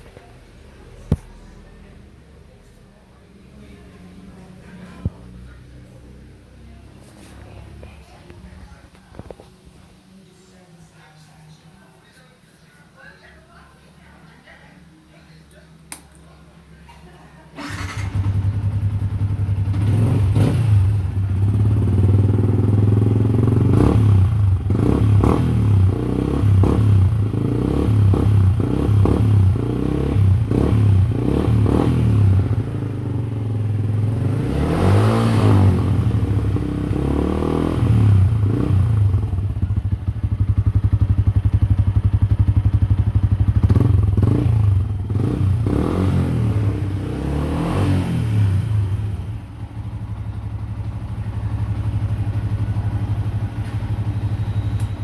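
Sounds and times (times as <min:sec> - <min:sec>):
motorcycle engine idling and revving: 0:17.6 - 0:55.0.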